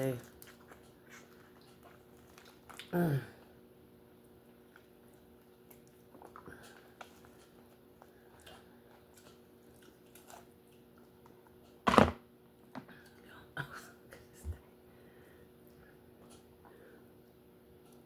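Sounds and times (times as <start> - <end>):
small wet clicks and squishes: 0.0 - 3.0, 4.2 - 11.7
close-up chewing: 0.0 - 11.8
faint steady hum: 0.0 - 18.0.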